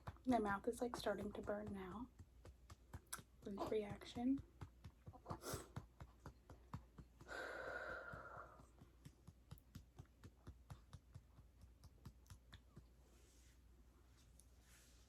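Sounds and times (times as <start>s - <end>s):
breathy exhale: 7.3s - 8.6s.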